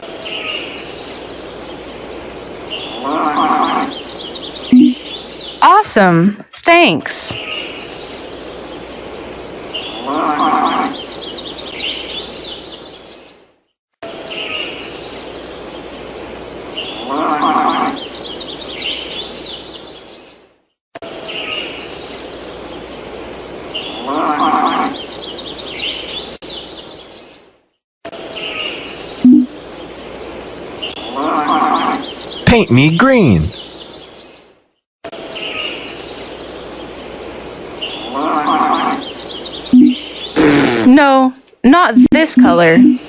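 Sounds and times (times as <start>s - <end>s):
birds chirping: 0.0s - 13.4s, 14.1s - 20.4s, 21.1s - 27.5s, 28.2s - 34.5s, 35.2s - 43.0s
farm animal call: 2.9s - 4.1s, 9.9s - 11.1s, 17.0s - 18.1s, 23.9s - 25.1s, 31.0s - 32.2s, 38.0s - 39.2s.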